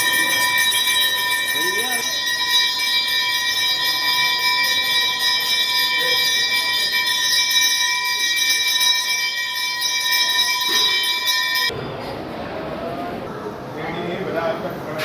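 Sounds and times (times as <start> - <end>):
temple bells ringing rapidly: 0.0 - 11.8.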